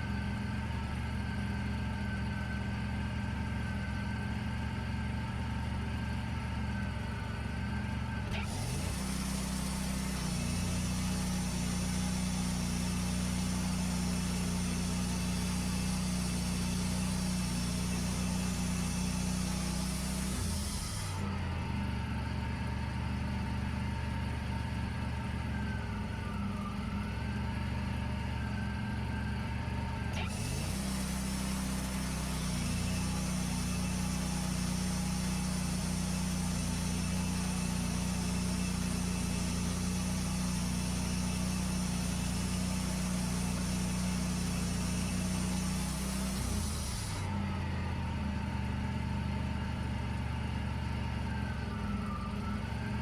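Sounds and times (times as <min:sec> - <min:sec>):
sawmill engine running: 0:00.0 - 0:53.0
saw blade hissing: 0:08.4 - 0:21.2, 0:30.2 - 0:47.3.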